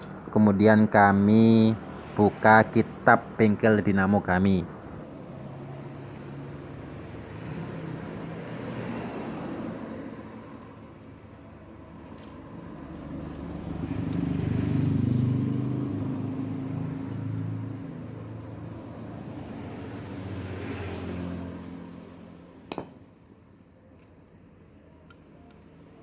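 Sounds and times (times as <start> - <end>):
vehicle engine passing: 4.6 - 10.9, 11.7 - 22.7.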